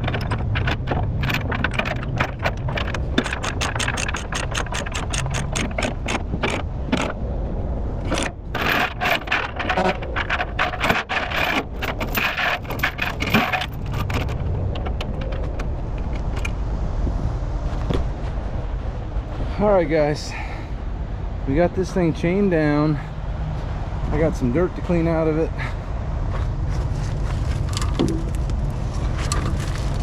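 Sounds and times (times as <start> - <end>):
steel chains clinking and rattling: 0.0 - 7.1, 8.0 - 16.3, 27.3 - 30.0
sharp metal clicks: 0.0 - 7.2
steady low rumble: 0.0 - 30.0.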